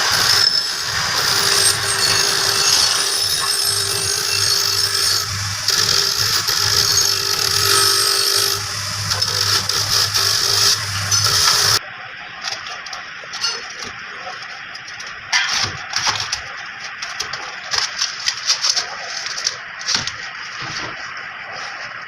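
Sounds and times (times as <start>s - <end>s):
metal tools clinking on workbench: 13.3s - 14.0s.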